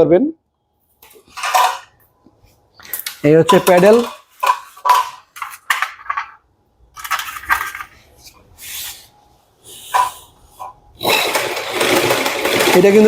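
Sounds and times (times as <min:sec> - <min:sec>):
hard parts knocking and rattling: 0:01.0 - 0:02.0, 0:02.8 - 0:08.0, 0:09.9 - 0:13.0.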